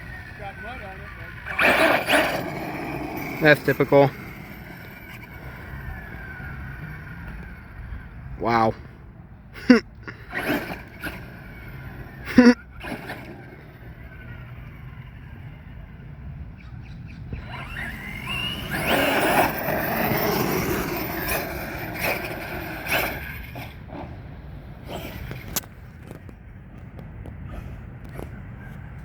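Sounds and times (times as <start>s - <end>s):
tyres rushing over grit: 0.0s - 7.0s, 17.6s - 24.2s
electric motor whining: 0.0s - 8.4s, 10.3s - 16.1s, 17.3s - 26.2s.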